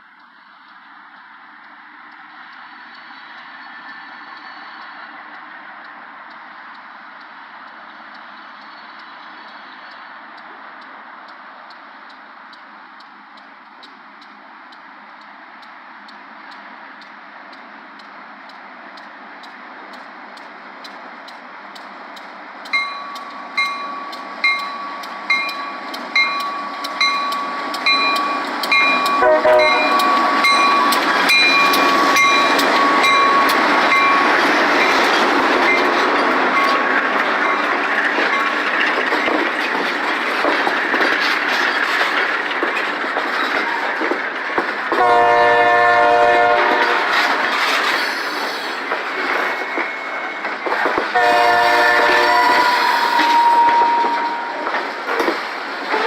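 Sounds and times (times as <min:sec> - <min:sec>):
wheels clicking over rail joints: 0:00.0 - 0:56.0
train rumbling past: 0:00.4 - 0:56.0
locomotive bell ringing: 0:22.7 - 0:39.7
train horn blasts: 0:29.1 - 0:30.6, 0:45.0 - 0:47.2, 0:51.2 - 0:54.6.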